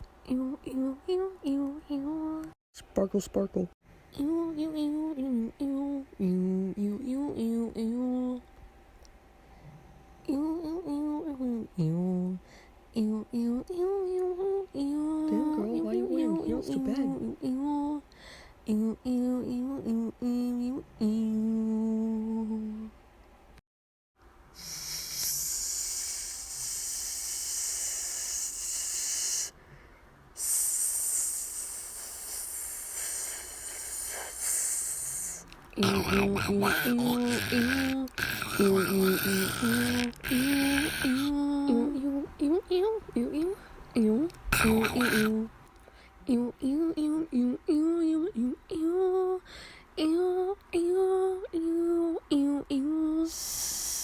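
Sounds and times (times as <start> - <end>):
woman singing wordless notes: 4.2 - 8.4, 13.0 - 18.0, 18.7 - 23.0, 31.4 - 45.6, 46.2 - 54.0
person hissing through teeth: 24.6 - 29.5, 30.4 - 41.4, 44.6 - 45.4, 53.3 - 54.0.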